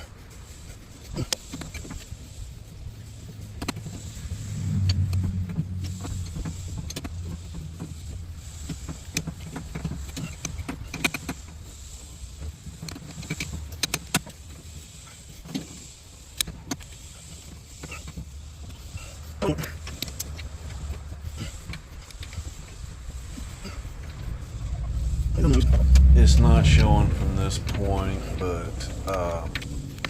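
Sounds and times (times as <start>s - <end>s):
small excavator engine running: 3.2s - 14.3s.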